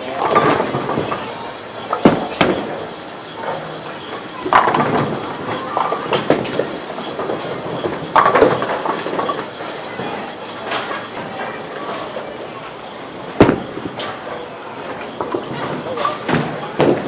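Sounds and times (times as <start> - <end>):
bowling balls rolling on wooden lanes: 0.2 - 11.2.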